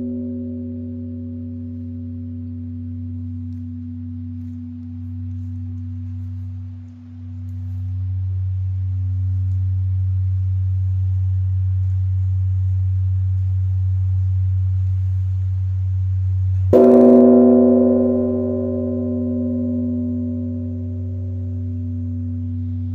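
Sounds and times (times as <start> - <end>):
large bronze bell humming: 0.0 - 11.0, 16.7 - 22.9
bell struck ringing with overtones: 16.8 - 22.9.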